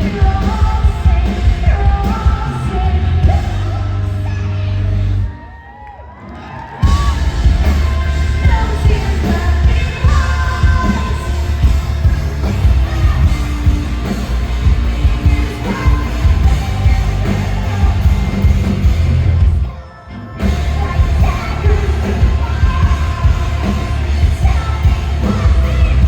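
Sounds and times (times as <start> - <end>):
live rock band playing: 0.0 - 5.2, 6.8 - 26.0
person singing: 6.8 - 26.0.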